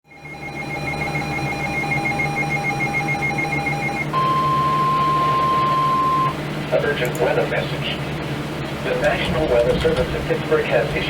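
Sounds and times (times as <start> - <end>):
steady alarm tone: 0.1 - 6.4
pulsing high beep: 0.2 - 6.4.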